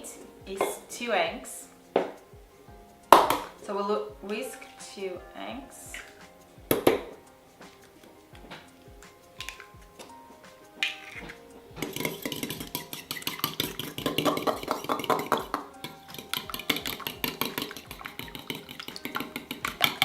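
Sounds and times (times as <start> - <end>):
whisk clicking against bowl: 11.8 - 20.0.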